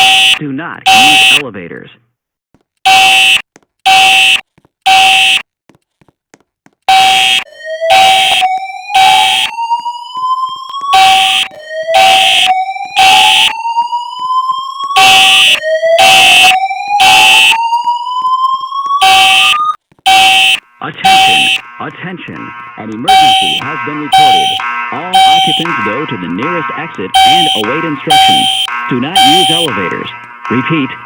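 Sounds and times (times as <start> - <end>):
fire alarm horn blasts: 0.0 - 1.4, 2.9 - 5.4, 6.9 - 31.0.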